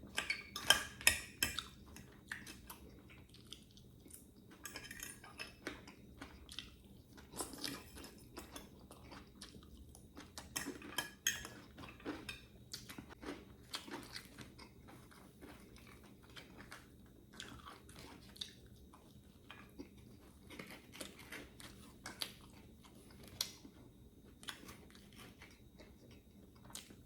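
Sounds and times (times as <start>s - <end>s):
person chewing crunchy food: 0.0s - 27.0s.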